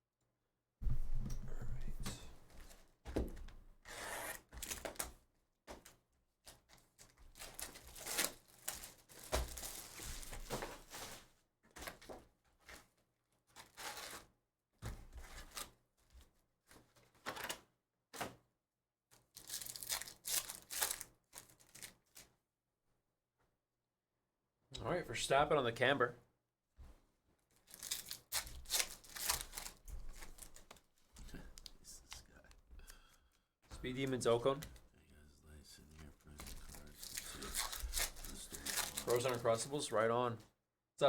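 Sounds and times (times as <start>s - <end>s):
wrappers tearing and crinkling: 4.2s - 5.0s, 7.0s - 11.1s, 13.6s - 14.3s, 19.3s - 22.3s, 27.6s - 31.8s, 36.4s - 39.6s.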